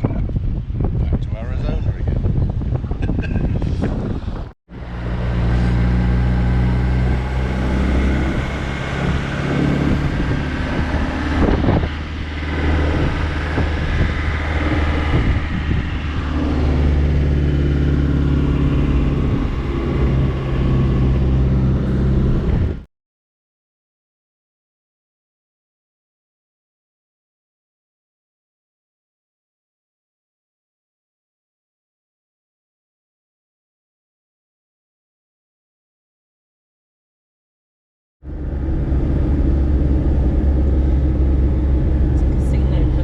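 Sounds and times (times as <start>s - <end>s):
road noise: 0.2s - 22.9s, 38.2s - 43.0s
vehicle engine drone: 2.3s - 22.9s, 38.2s - 43.0s.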